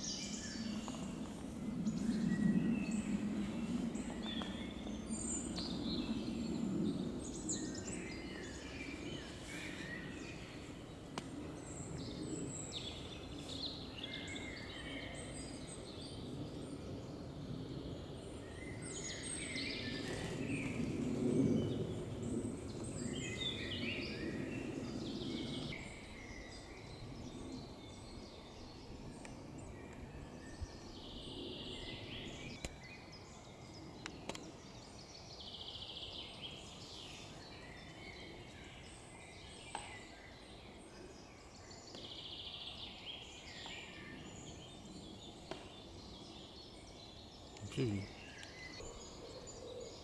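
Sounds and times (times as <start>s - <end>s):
faint bird calls: 47.5s - 50.0s.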